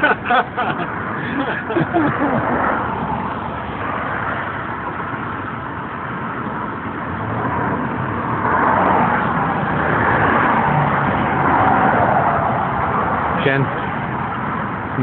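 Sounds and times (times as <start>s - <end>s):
cars passing on road: 0.0s - 15.0s.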